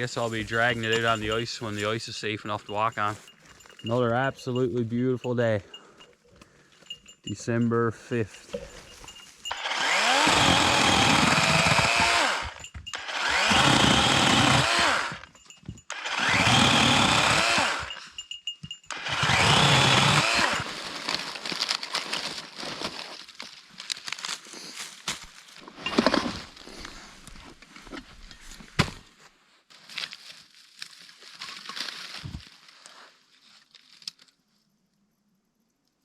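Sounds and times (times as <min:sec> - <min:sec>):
chainsaw cutting wood: 0:09.5 - 0:15.3, 0:15.9 - 0:18.0, 0:18.9 - 0:21.2.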